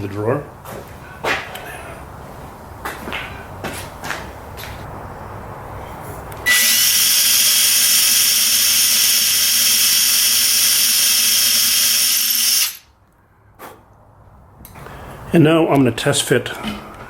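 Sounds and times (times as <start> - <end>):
power drill boring into wood: 6.5 - 12.8.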